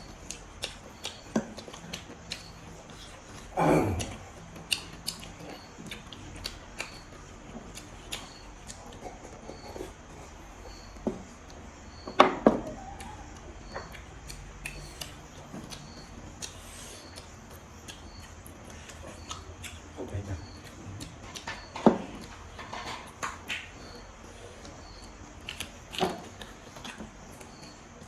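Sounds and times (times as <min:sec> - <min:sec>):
chewing meat on the bone: 0:00.0 - 0:12.0, 0:12.8 - 0:28.0.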